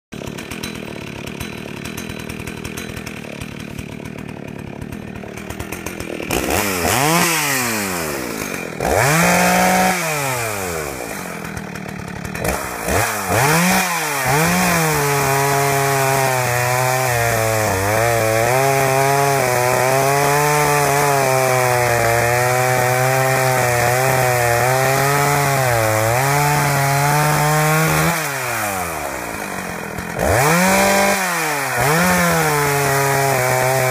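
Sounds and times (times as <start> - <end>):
chainsaw misfiring and revving: 0.1 - 33.9.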